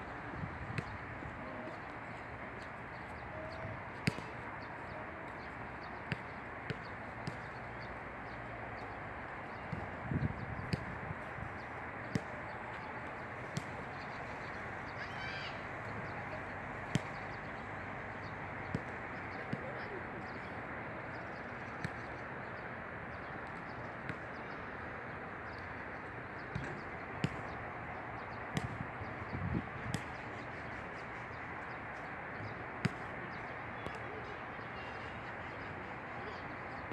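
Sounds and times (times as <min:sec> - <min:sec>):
steady wind blowing: 0:00.0 - 0:03.9, 0:09.0 - 0:14.9, 0:27.5 - 0:30.9
wind: 0:00.0 - 0:36.9.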